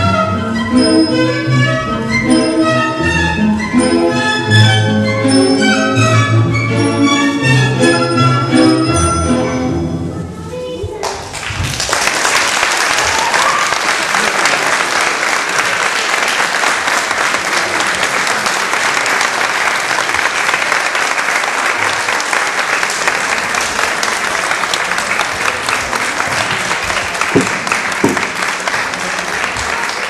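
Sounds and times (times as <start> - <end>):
audience applauding: 11.1 - 30.0.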